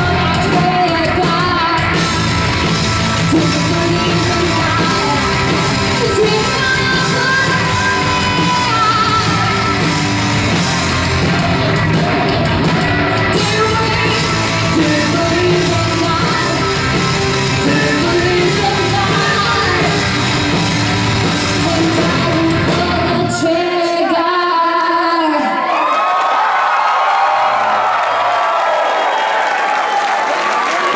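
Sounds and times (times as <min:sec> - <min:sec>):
woman singing and yelling: 0:00.0 - 0:02.0, 0:03.3 - 0:10.0, 0:13.3 - 0:16.9, 0:17.6 - 0:20.3, 0:21.5 - 0:25.7
heavy rock band: 0:00.0 - 0:24.0.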